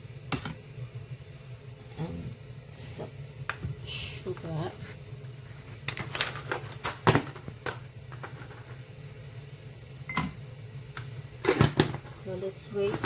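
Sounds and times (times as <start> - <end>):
steady low hum: 0.0 - 13.0
kitchen items knocking: 11.4 - 12.2.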